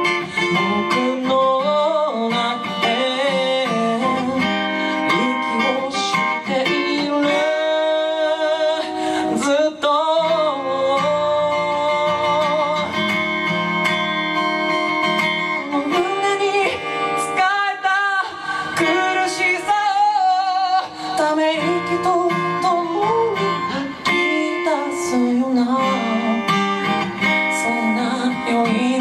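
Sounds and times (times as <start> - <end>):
acoustic guitar: 0.0 - 29.0
person singing long wavering notes: 15.5 - 29.0.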